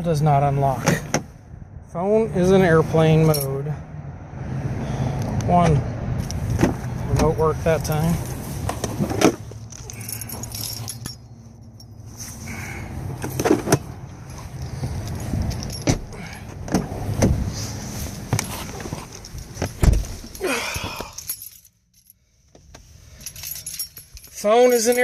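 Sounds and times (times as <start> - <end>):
car keys jangling: 7.8 - 12.6, 13.2 - 16.6, 18.1 - 22.2, 23.1 - 25.0
heavy thump: 19.6 - 20.3.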